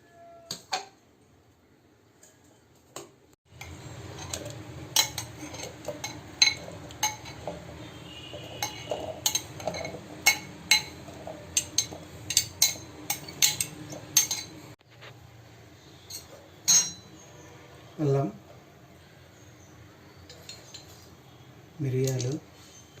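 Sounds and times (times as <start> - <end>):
utensils clinking against dishes: 3.5 - 14.8, 16.1 - 17.2, 20.2 - 21.2.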